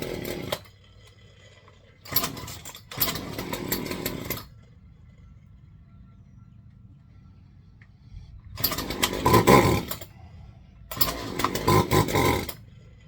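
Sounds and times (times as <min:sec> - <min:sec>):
chainsaw engine firing: 0:00.0 - 0:00.7, 0:02.0 - 0:04.5, 0:08.6 - 0:10.1, 0:10.9 - 0:12.6.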